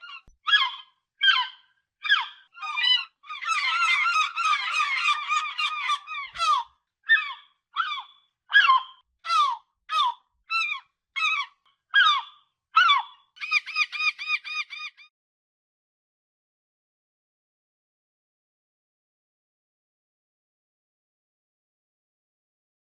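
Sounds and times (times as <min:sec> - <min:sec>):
gulls calling: 0:00.0 - 0:10.2.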